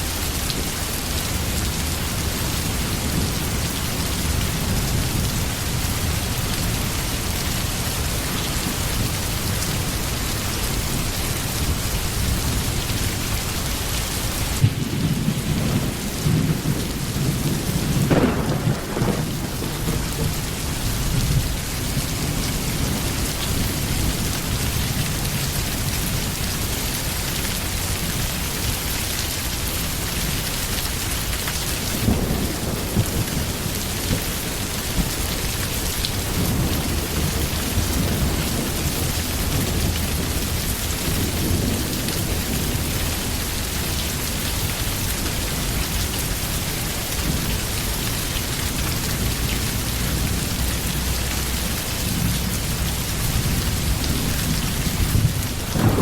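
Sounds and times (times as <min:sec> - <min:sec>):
heavy rain: 0:00.0 - 0:56.0
rolling thunder: 0:14.4 - 0:24.4, 0:31.9 - 0:44.2, 0:49.0 - 0:56.0.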